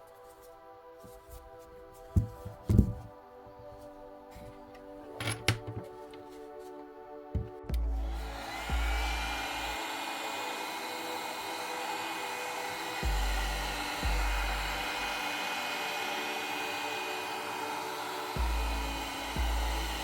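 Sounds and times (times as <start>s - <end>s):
heat gun blowing with whine: 7.4s - 20.0s.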